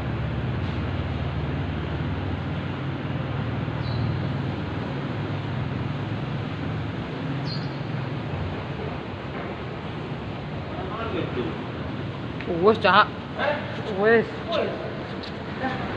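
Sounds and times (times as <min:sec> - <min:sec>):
low engine rumble: 0:00.0 - 0:15.9.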